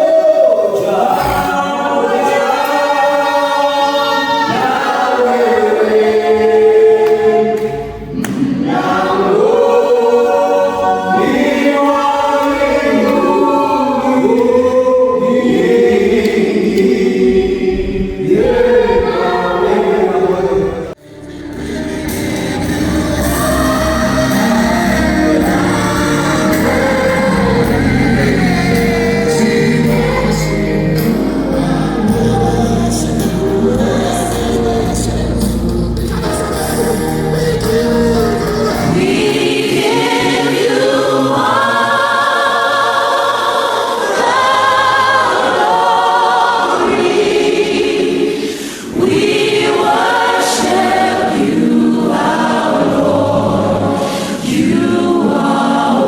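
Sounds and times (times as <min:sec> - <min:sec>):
choir singing gospel: 0:00.0 - 0:56.0
deep bass accompaniment: 0:21.0 - 0:39.4.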